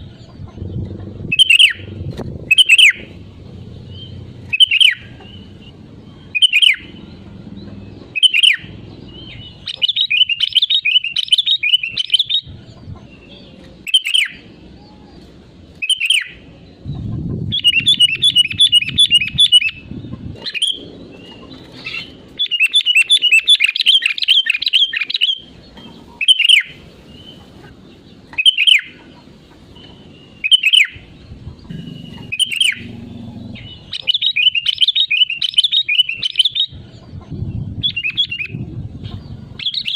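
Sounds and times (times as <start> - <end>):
bird chattering notes: 0.0 - 14.5, 15.8 - 39.9
bird whistling phrases: 1.3 - 1.9, 2.5 - 3.2, 3.9 - 5.6, 6.3 - 6.9, 8.1 - 8.7, 13.3 - 15.2, 17.5 - 20.8, 21.8 - 25.5, 26.2 - 26.8, 28.4 - 29.0, 30.3 - 31.1, 31.7 - 36.8.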